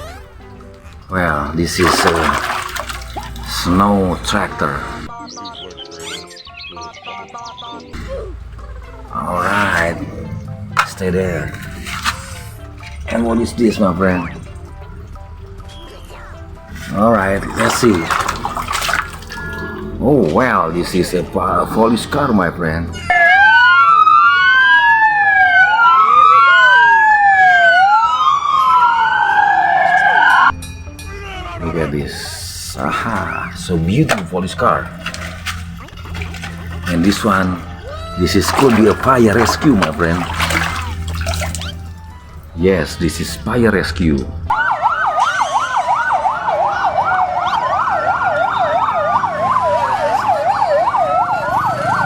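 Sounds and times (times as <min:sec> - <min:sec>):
police siren wailing: 0:06.8 - 0:43.5, 0:44.5 - 0:52.0
siren fast yelp: 0:23.0 - 0:31.6, 0:44.5 - 0:52.0
siren slow wail: 0:23.0 - 0:31.8, 0:44.5 - 0:52.0.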